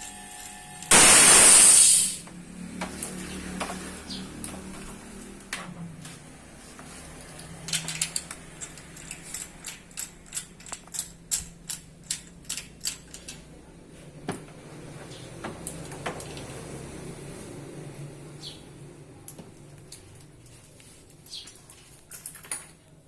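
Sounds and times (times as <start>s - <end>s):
small metal parts clinking: 7.2s - 13.6s, 19.3s - 23.0s.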